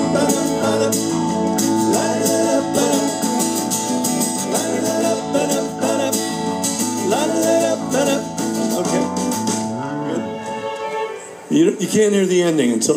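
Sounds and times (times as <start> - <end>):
person singing: 0.0 - 9.2
rock band playing live: 0.0 - 9.8.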